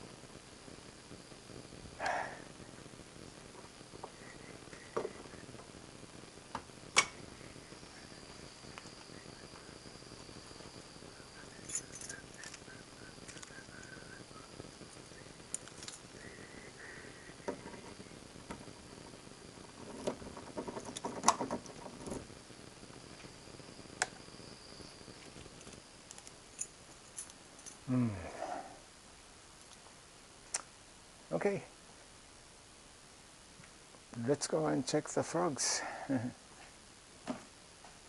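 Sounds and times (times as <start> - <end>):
high-pitched insect trill: 3.6 - 28.9.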